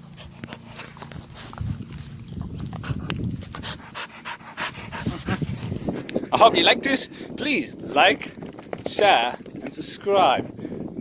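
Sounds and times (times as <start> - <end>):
dog panting: 0.0 - 6.5.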